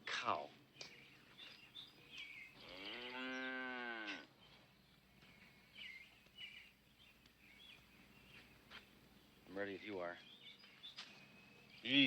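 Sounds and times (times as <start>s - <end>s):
cow mooing: 2.6s - 4.3s.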